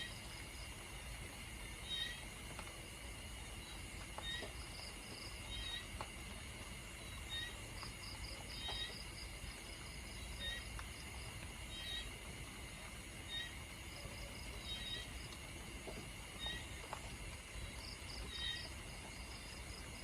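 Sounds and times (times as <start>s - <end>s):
insects and frogs chirping: 0.0s - 20.0s
rain hiss: 0.0s - 20.0s
soft drip ticks: 10.6s - 11.7s, 14.9s - 20.0s.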